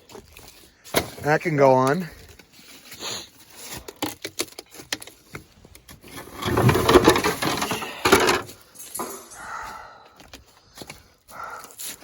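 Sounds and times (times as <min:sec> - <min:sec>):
metal parts scraping clatter: 0:06.0 - 0:09.3.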